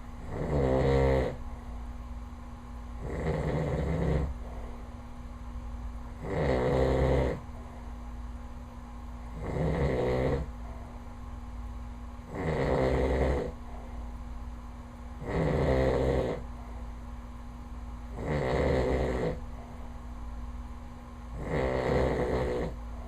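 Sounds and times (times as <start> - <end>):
man snoring: 0.2 - 1.4, 3.0 - 4.4, 6.2 - 7.4, 9.4 - 10.5, 12.3 - 13.6, 15.2 - 16.4, 18.2 - 19.4, 21.4 - 22.8.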